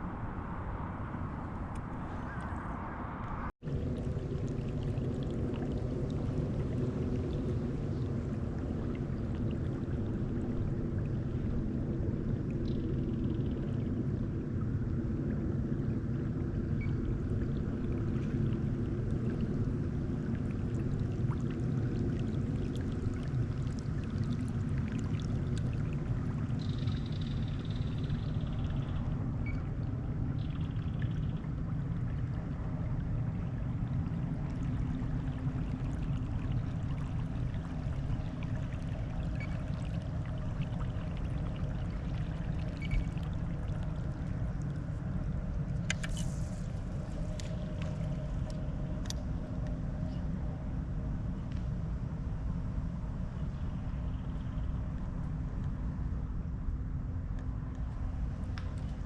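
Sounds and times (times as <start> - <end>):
steady low hum: 0.0 - 59.0
water trickling and splashing: 3.6 - 50.2.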